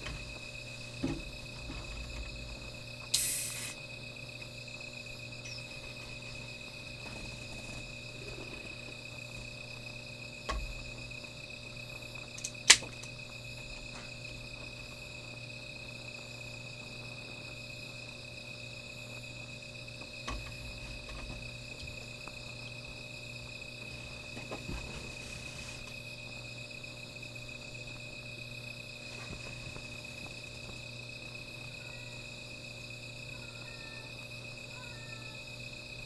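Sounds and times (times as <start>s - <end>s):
crickets trilling: 0.0s - 36.0s
short hiss: 3.0s - 3.8s.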